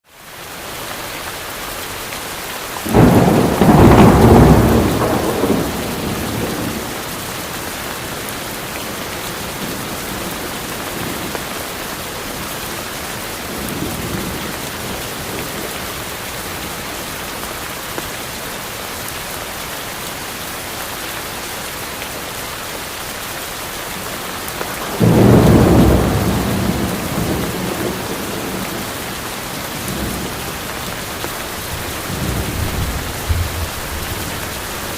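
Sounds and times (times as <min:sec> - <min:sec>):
heavy rain: 0:00.0 - 0:34.9
thunder rumbling: 0:02.8 - 0:07.0, 0:24.8 - 0:34.9.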